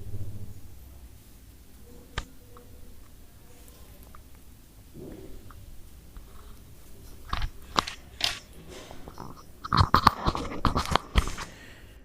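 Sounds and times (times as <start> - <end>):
earphone handling clicks and scraping: 6.2 - 11.5.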